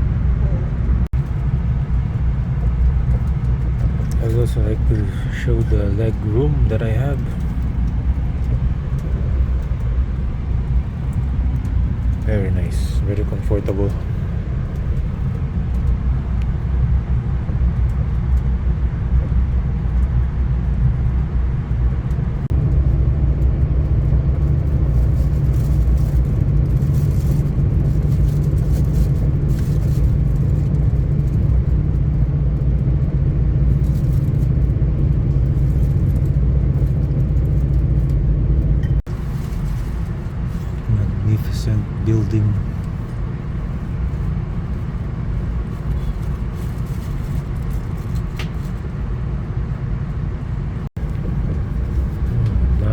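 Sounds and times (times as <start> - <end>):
train rumbling inside coach: 0.0 - 52.9.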